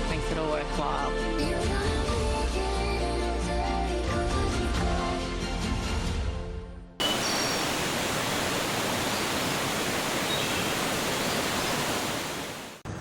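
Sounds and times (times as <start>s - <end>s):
faint high chirps: 7.0s - 12.7s
steady rushing noise: 7.0s - 12.8s.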